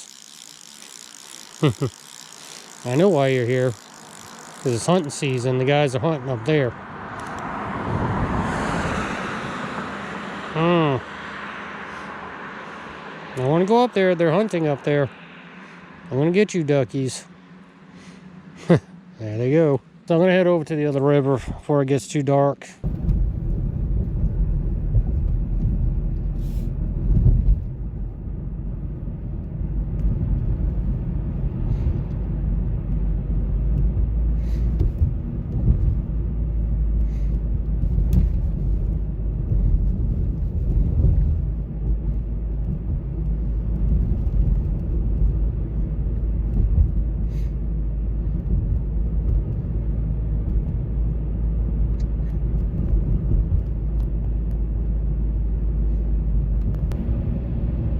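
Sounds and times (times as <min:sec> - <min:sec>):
faint ticks: 0:00.0 - 0:05.1
car engine and road noise: 0:00.0 - 0:57.9.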